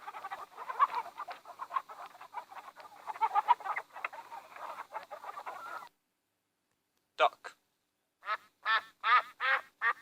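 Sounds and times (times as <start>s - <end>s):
chickens clucking: 0.0s - 6.0s.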